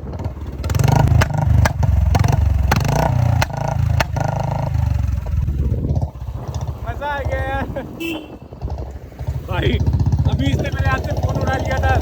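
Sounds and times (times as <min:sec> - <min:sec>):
motorcycle engine revving: 0:00.0 - 0:12.0
exhaust backfire pops: 0:00.6 - 0:04.4.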